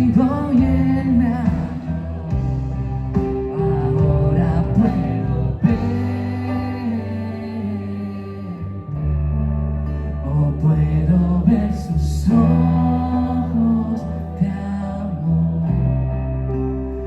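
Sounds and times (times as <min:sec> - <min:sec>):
singing: 0:00.0 - 0:08.9
worship band playing: 0:00.0 - 0:09.2
bass notes: 0:00.0 - 0:17.0.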